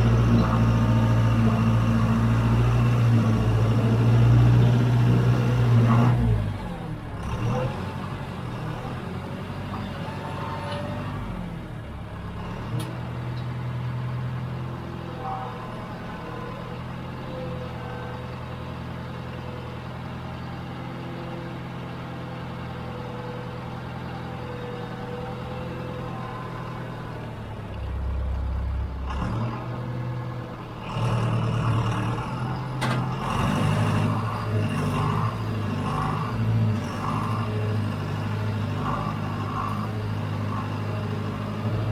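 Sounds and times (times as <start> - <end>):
backhoe diesel engine running: 0.0 - 41.9.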